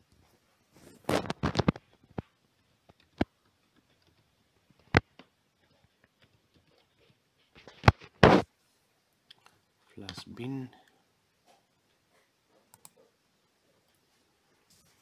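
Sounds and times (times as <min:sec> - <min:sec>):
computer mouse clicks: 0:12.7 - 0:13.0.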